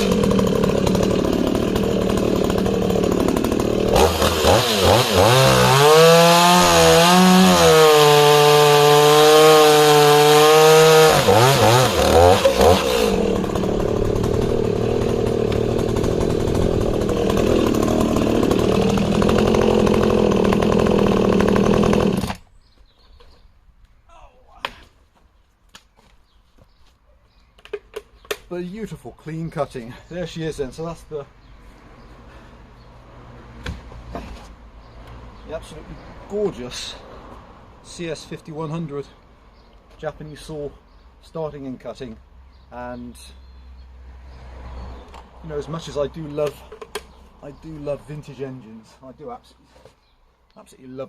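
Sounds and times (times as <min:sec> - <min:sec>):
chainsaw cutting wood: 0:00.0 - 0:22.5.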